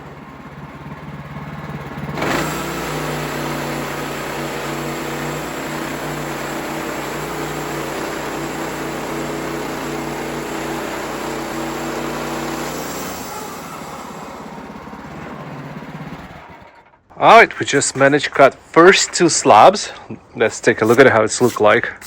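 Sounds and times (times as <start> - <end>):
sawmill gas engine under load: 0.0 - 22.0.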